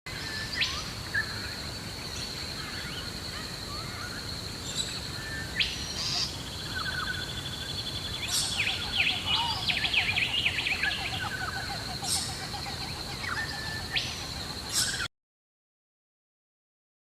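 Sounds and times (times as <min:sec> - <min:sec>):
soft bird chirps: 0:00.1 - 0:15.1
loud rising bird calls: 0:03.7 - 0:15.1.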